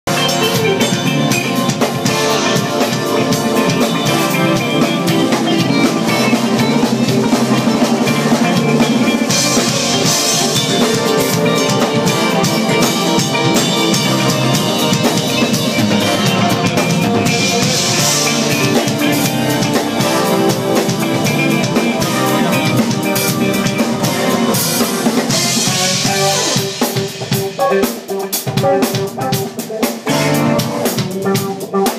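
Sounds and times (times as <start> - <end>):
drum kit: 0.0 - 31.9
jazz band playing: 0.1 - 31.9.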